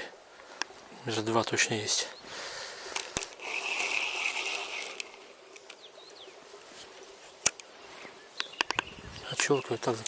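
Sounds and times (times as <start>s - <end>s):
quiet hiss: 0.0s - 10.0s
fishing reel whirring: 2.8s - 5.7s
sharp click: 8.4s - 9.5s.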